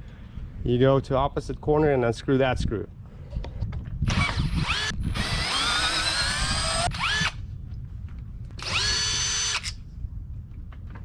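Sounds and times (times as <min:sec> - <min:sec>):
power drill whining: 0:04.1 - 0:07.4, 0:08.6 - 0:09.8.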